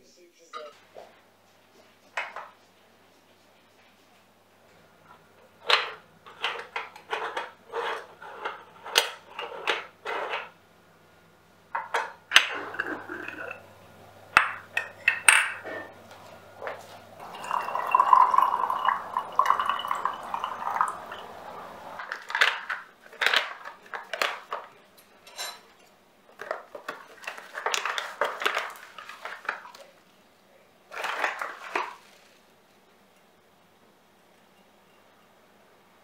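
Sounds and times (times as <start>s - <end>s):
dishes and cutlery clattering: 5.6s - 10.6s, 11.8s - 13.7s, 14.3s - 29.8s.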